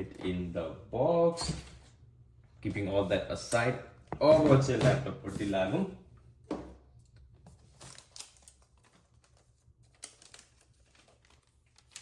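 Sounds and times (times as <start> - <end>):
paper wrapping rustling: 7.5 - 12.0.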